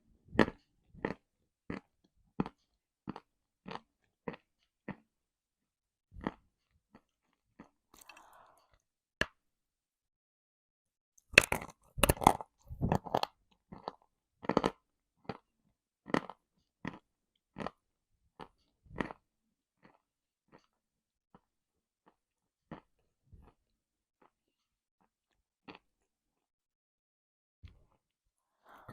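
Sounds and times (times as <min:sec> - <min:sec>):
person chewing crunchy earth: 0:00.4 - 0:05.1, 0:06.2 - 0:08.4, 0:11.3 - 0:19.2, 0:19.8 - 0:24.4, 0:25.0 - 0:26.0.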